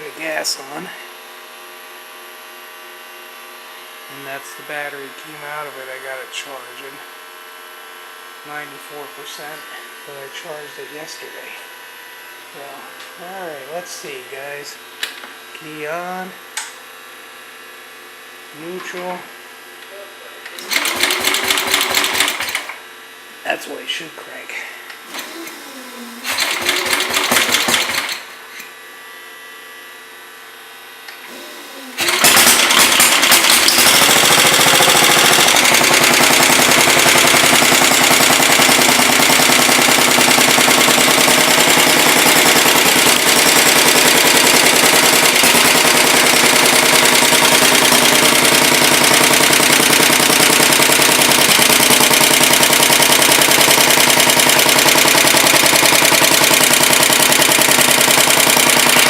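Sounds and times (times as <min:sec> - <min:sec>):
starter cranking engine: 0:20.6 - 0:22.8, 0:26.2 - 0:28.3, 0:32.0 - 0:59.0
tractor engine running: 0:26.3 - 0:28.2, 0:32.0 - 0:59.0.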